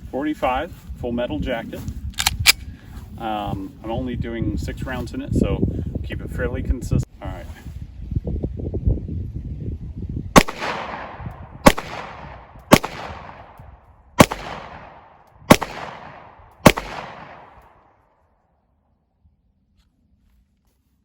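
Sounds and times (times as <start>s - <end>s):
pistol shots with echo: 10.4s - 13.6s, 14.2s - 17.9s.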